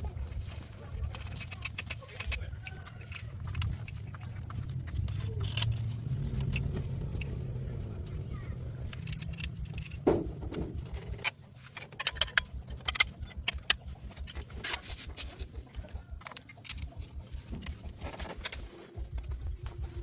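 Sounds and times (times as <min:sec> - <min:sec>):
car engine running: 0:03.3 - 0:20.0
sharp clicks and knocks: 0:08.8 - 0:19.8.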